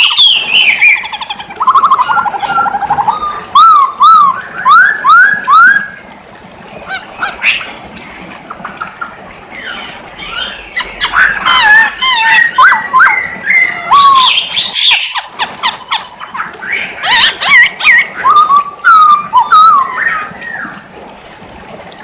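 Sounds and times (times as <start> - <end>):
songbird whistling: 0.0 - 6.0, 9.6 - 15.2, 16.6 - 20.8.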